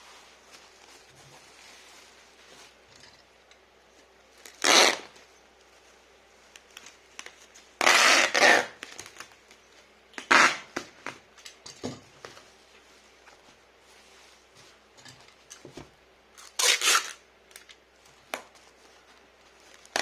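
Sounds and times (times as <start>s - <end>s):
packing material rasping: 16.4s - 17.7s.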